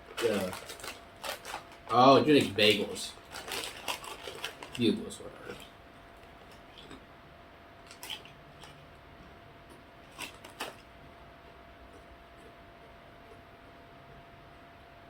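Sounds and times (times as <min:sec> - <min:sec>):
snack bag crackling: 0:00.0 - 0:07.0, 0:07.8 - 0:08.8, 0:10.0 - 0:10.9
snacks crunching: 0:03.2 - 0:07.0, 0:07.8 - 0:10.8.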